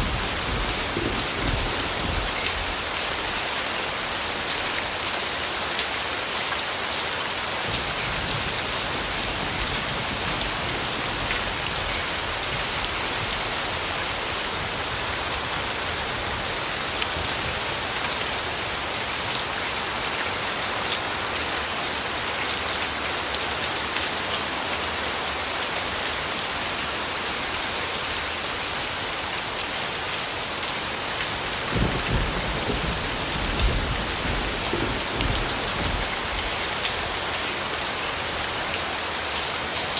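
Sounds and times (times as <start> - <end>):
low rumble of thunder: 0.0 - 2.8, 31.7 - 36.5
steady rain hissing: 0.0 - 39.9.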